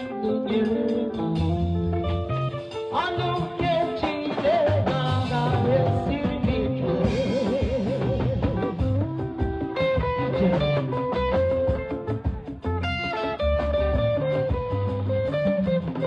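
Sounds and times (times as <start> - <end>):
person singing: 0.0 - 8.8, 10.2 - 11.1
band with guitar and drums: 0.0 - 16.0.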